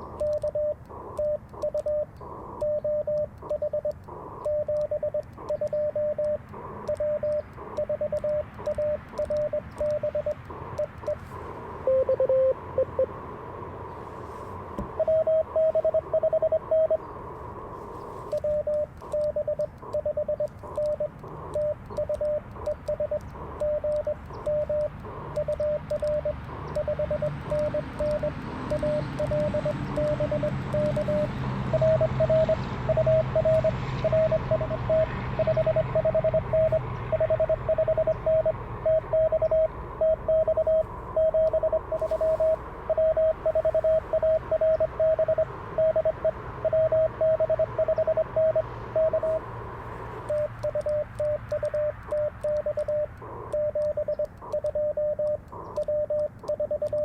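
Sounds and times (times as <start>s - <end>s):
morse code tone: 0.0s - 13.2s, 14.9s - 57.0s
radio band hiss: 0.0s - 37.1s, 40.8s - 47.2s, 48.6s - 57.0s
fainter higher morse signal: 0.0s - 57.0s.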